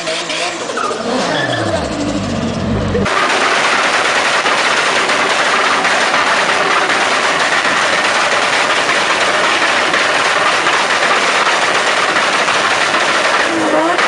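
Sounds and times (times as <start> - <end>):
car exhaust crackling pops: 3.0 - 14.0.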